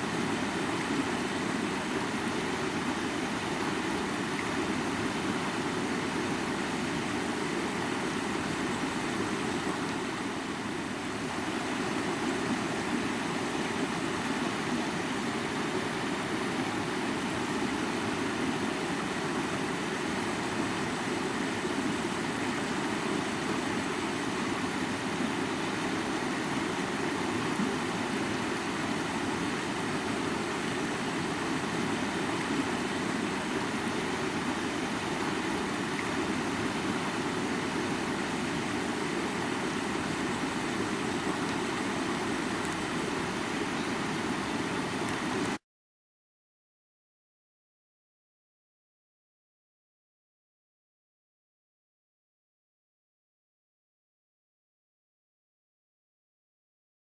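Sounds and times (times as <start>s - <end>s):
river water rushing: 0.0s - 45.6s.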